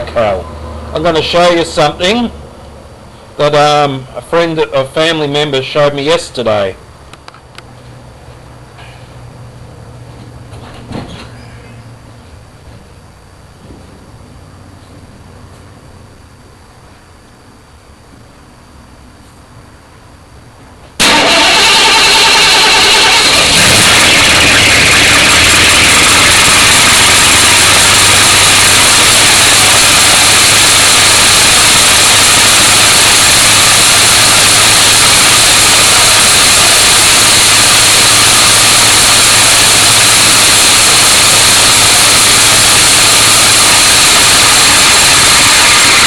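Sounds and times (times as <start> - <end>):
car engine idling: 21.0 - 46.0
high whine from engine belt: 21.0 - 46.0.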